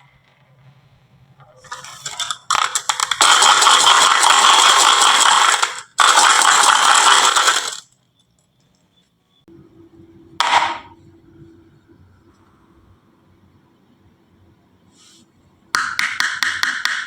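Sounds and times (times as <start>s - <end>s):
marbles rattling down wooden run: 1.6s - 7.9s.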